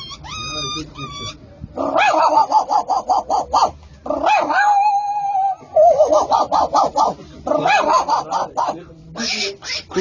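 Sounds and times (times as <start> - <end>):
dog yipping: 0.0 - 10.0
dog howling: 1.8 - 8.8.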